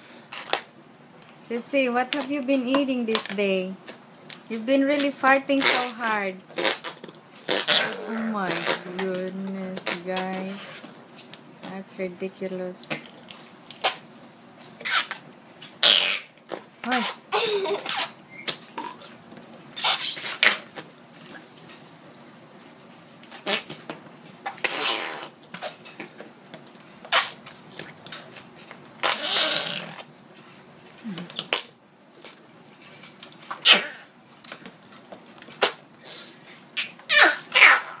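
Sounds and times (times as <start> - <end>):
slime squelching fart noises: 5.0 - 11.8, 13.2 - 19.2, 19.8 - 21.5, 23.2 - 26.2, 27.0 - 30.2, 33.4 - 34.2, 35.4 - 38.0.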